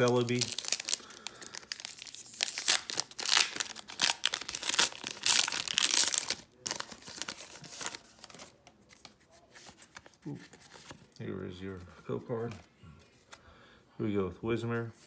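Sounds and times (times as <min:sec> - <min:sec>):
foil wrapper tearing and crinkling: 0:00.0 - 0:08.2.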